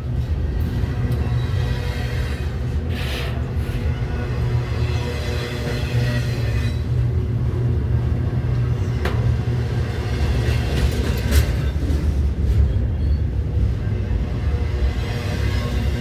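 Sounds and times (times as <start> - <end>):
freight train rumbling past: 0.0 - 16.0
sharp clanks from train wheels: 8.7 - 13.8.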